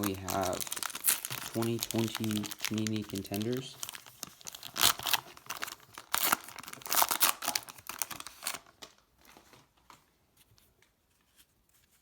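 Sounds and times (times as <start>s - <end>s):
wrapper tearing and crinkling: 0.0s - 9.0s.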